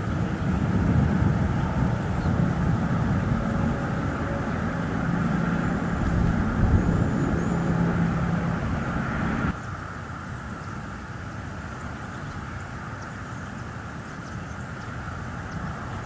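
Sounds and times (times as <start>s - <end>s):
low engine rumble: 0.0s - 10.6s.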